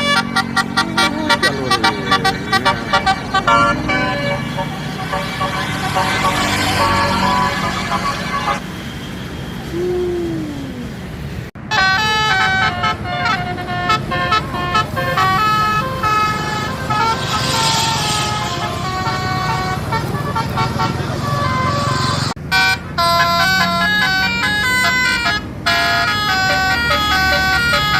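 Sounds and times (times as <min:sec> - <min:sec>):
bus horn playing melodic tune: 0:00.0 - 0:08.7, 0:11.6 - 0:27.9
bus engine running: 0:00.0 - 0:27.9.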